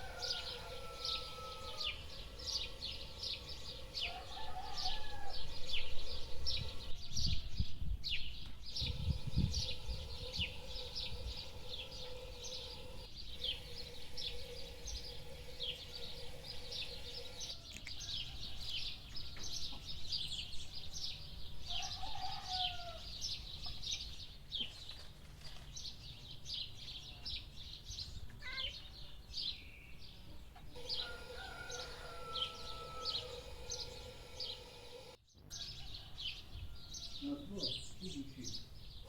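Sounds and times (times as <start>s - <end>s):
rooster crowing: 0.0s - 6.9s, 8.8s - 18.9s, 21.7s - 23.2s, 30.8s - 37.1s
small birds chirping: 0.0s - 39.0s
chicken call: 30.8s - 34.8s.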